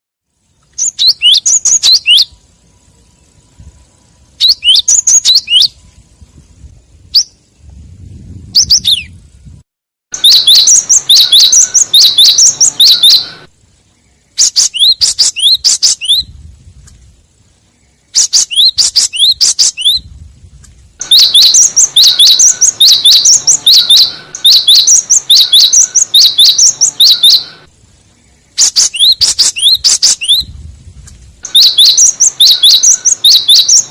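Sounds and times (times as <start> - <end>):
bird calling rapid high notes: 10.2 - 13.5, 21.0 - 27.7, 28.5 - 30.4, 31.4 - 33.9.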